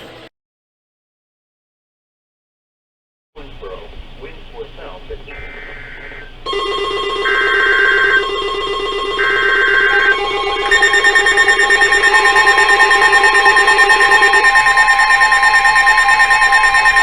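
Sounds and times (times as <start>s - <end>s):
data-header screech bursts: 5.3s - 17.0s
two-tone attention signal warbling: 5.3s - 17.0s
steady buzzing alert tone: 5.4s - 17.0s.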